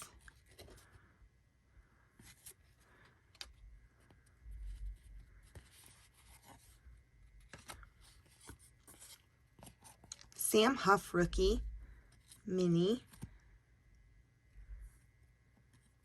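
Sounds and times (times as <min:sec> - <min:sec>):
cards clicking and rustling: 0:07.4 - 0:10.3.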